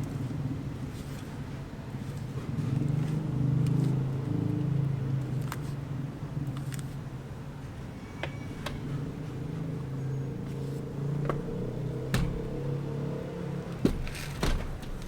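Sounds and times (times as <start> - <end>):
low mechanical hum: 0.0 - 15.0
sharp knocks or clicks: 11.2 - 12.8.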